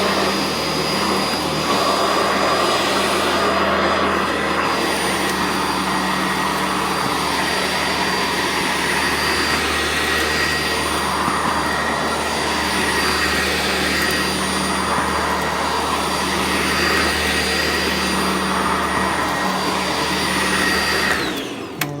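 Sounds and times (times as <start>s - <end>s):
vacuum cleaner motor whine: 0.0s - 22.0s.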